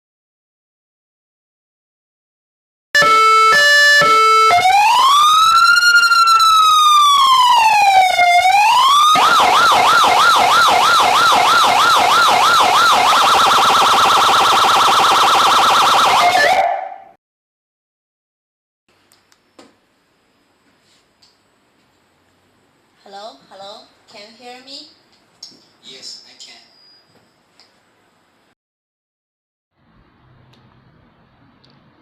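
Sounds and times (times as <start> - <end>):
electronic emergency siren: 3.0 - 17.2.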